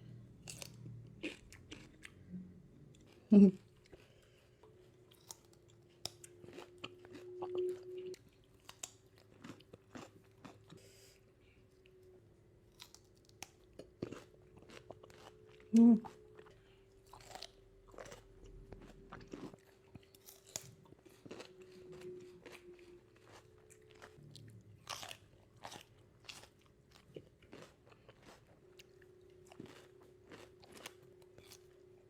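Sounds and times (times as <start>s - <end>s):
low hum: 0.0s - 3.7s, 15.3s - 25.6s
chewing crisp cucumber: 0.4s - 11.2s, 12.6s - 32.0s.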